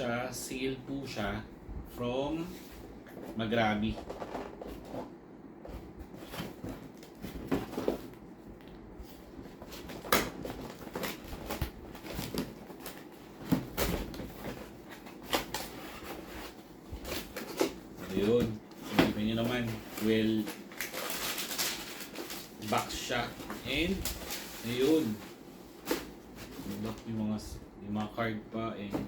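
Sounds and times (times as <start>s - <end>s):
packaging being handled: 9.4s - 27.2s.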